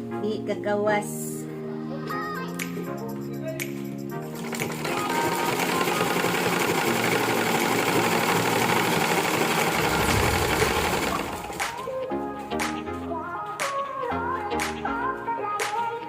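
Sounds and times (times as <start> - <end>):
background music: 0.0 - 16.0
sewing machine running: 4.3 - 11.9.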